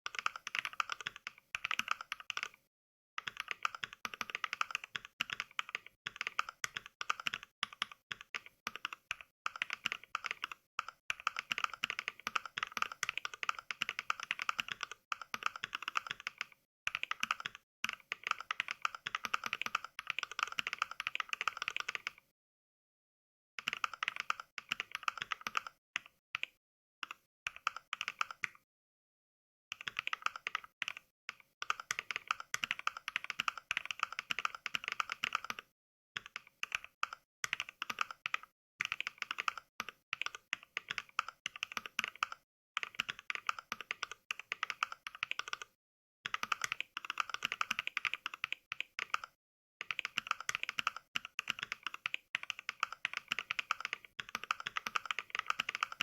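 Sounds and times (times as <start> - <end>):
mechanical keyboard clicks: 3.2 - 22.2, 29.8 - 45.7, 46.3 - 56.0.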